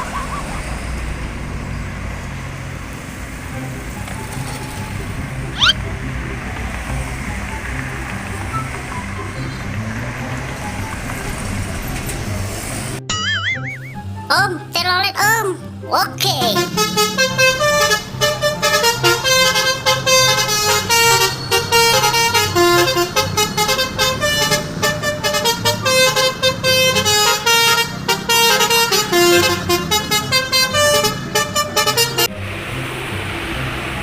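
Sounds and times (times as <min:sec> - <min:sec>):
multi-tone musical air horn: 0:16.5 - 0:32.3.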